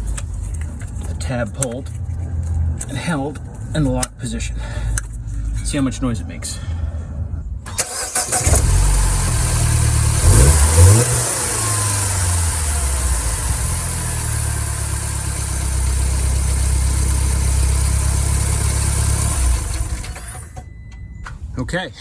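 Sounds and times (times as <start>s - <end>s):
car engine revving and idling: 7.8s - 20.6s.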